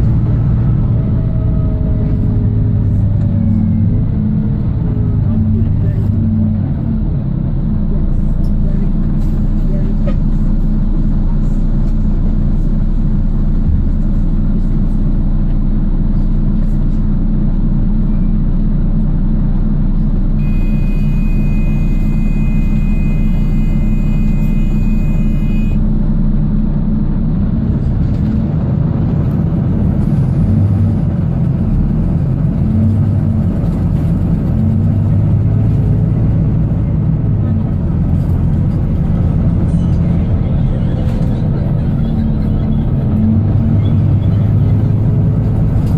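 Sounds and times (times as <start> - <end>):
bus diesel engine droning: 0.0 - 45.9
high-pitched tone: 20.4 - 25.8.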